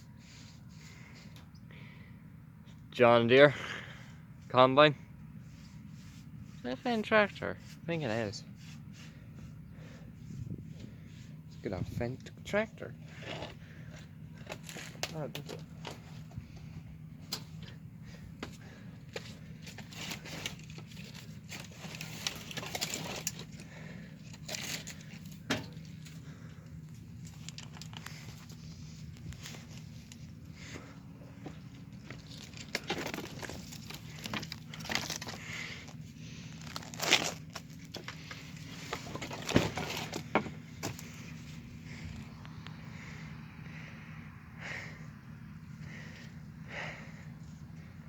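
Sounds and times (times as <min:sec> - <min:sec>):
phone handling rustle: 0:31.4 - 0:41.3.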